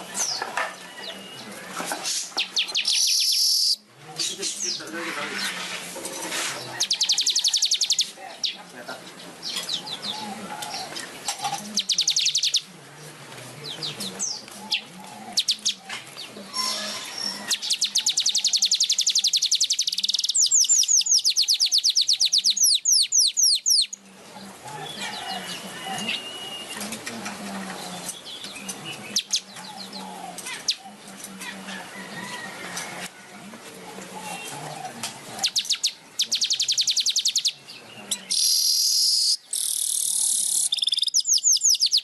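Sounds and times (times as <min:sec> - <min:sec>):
weaver bird singing: 0:00.0 - 0:05.0, 0:06.6 - 0:12.7, 0:13.6 - 0:31.7, 0:34.2 - 0:42.0.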